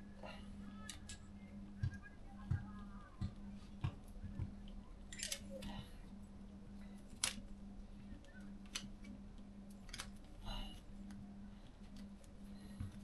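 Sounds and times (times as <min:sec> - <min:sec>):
steady low hum: 0:00.0 - 0:13.0
clicks and rustles of wires: 0:06.8 - 0:13.0.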